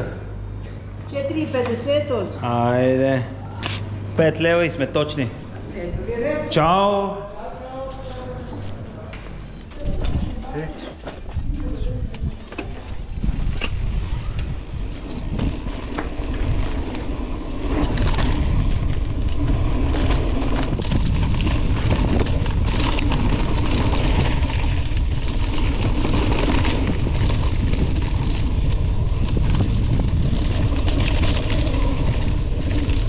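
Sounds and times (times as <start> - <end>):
wind buffeting microphone: 5.0 - 33.0
bike clicks and knocks: 7.8 - 33.0.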